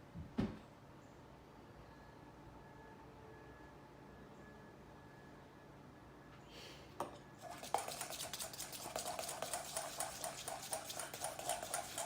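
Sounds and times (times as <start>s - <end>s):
spoon scraping bowl: 7.4s - 12.0s.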